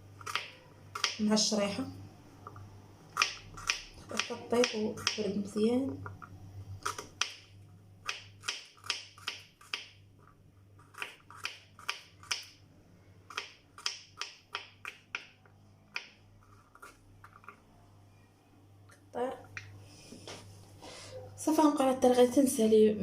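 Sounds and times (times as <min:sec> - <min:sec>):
knife chopping garlic: 0:00.2 - 0:01.3, 0:03.1 - 0:06.2, 0:06.8 - 0:10.0, 0:10.8 - 0:12.6, 0:13.3 - 0:17.0.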